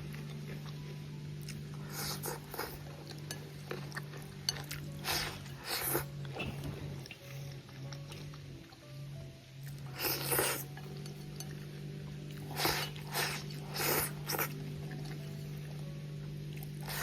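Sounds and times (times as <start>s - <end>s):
crunchy chewing: 0.0s - 8.4s, 12.3s - 15.8s
steady low hum: 0.0s - 17.0s.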